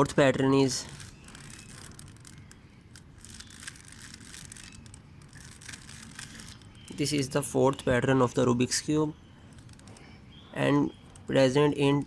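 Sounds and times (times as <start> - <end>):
puzzle cube clicking and rubbing: 0.8 - 6.8.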